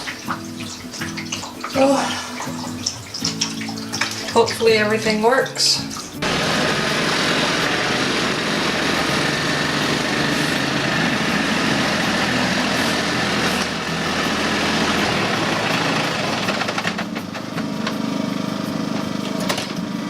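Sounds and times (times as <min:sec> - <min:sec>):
engine running steadily: 0:05.9 - 0:20.0.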